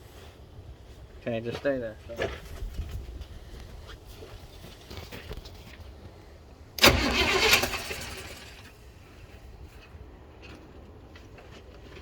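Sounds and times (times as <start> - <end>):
engine cranking by starter: 6.8 - 8.7.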